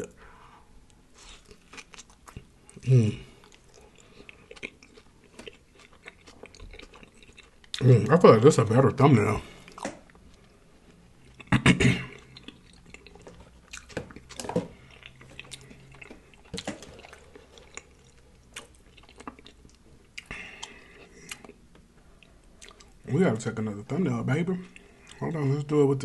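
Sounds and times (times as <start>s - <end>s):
person chewing: 0.8s - 8.1s, 9.4s - 23.0s, 24.6s - 25.3s.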